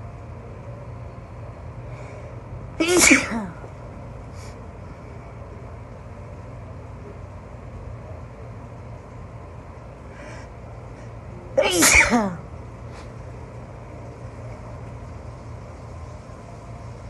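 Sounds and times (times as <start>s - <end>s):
stifled sneeze: 2.8s - 3.7s, 11.6s - 12.4s
brief voiced cry: 11.6s - 12.4s.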